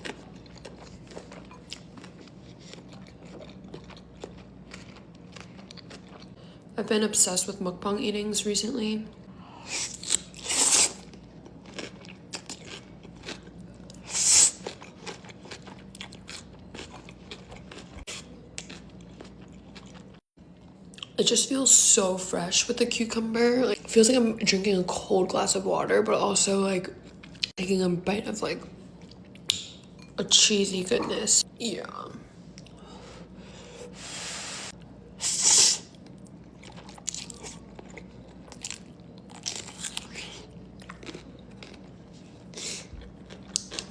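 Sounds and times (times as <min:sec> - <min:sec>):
chewing with clicks: 0:00.0 - 0:06.4, 0:40.8 - 0:41.9, 0:43.0 - 0:43.9
loud bite and crunch: 0:09.7 - 0:20.1.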